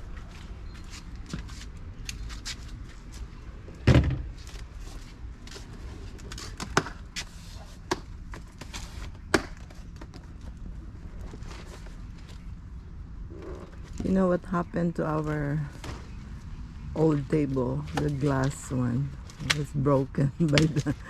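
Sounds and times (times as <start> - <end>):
heavy thump: 3.9 - 4.3.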